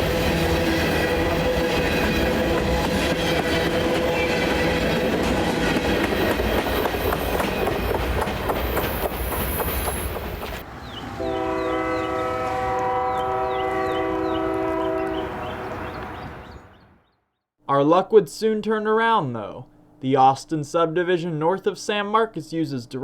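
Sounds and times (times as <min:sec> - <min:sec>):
locomotive air horn chord: 0:00.0 - 0:04.9, 0:11.2 - 0:16.7
train wheels clattering over rails: 0:00.0 - 0:11.0.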